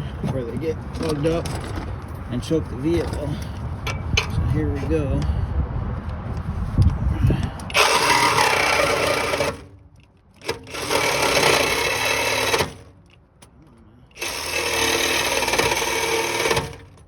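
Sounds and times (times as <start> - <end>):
reciprocating saw cutting metal pipe: 7.7 - 9.8, 10.4 - 12.9, 14.2 - 16.9.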